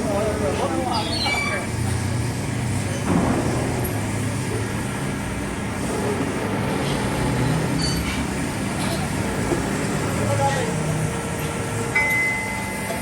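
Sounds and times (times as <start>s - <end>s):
machine droning: 2.3s - 7.8s.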